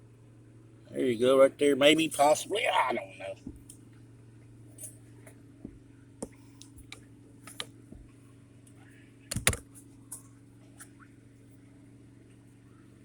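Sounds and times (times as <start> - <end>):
steady low hum: 0.0 - 13.0
small parts clicking and tapping: 9.3 - 10.2.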